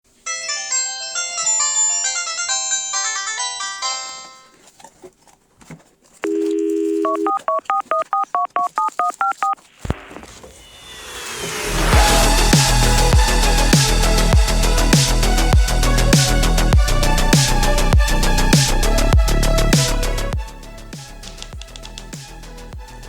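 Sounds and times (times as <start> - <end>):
phone melody: 6.2 - 9.6
steady phone beep: 6.2 - 9.6
electronic music: 9.8 - 23.0.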